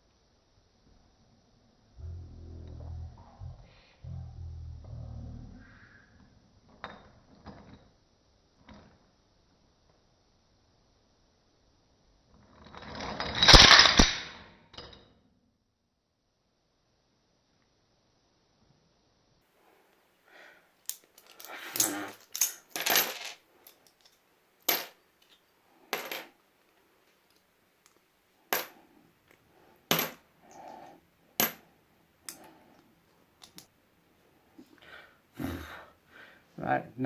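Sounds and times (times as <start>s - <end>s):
handling noise: 19.6s - 33.8s.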